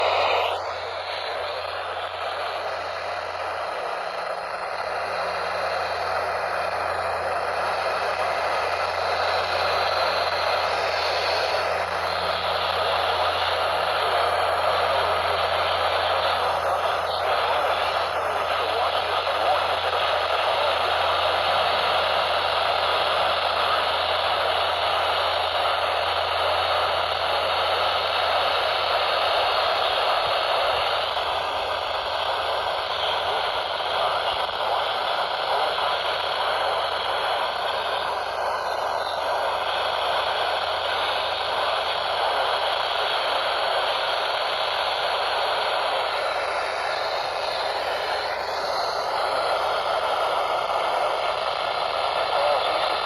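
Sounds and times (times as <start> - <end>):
radio static hiss: 0.0 - 53.0.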